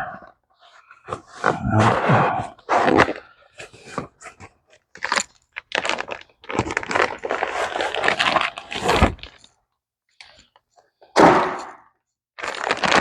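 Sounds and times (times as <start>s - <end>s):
packaging rustling and tearing: 4.9s - 9.6s, 12.4s - 13.0s.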